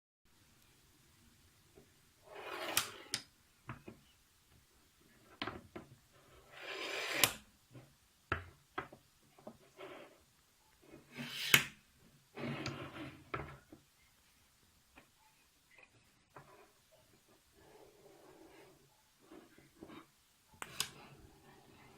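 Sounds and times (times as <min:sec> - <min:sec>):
gritty bearing block sliding: 0:02.3 - 0:03.2, 0:06.2 - 0:07.4.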